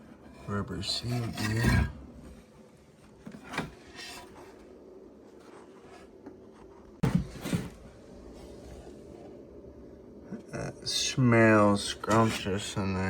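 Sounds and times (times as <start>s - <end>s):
rubbing and scraping: 0.0s - 4.8s.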